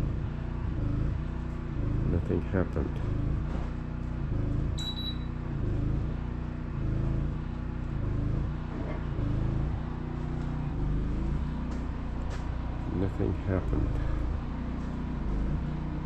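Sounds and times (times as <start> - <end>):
low mechanical drone: 0.0 - 16.0
short high electronic beep: 4.8 - 5.4.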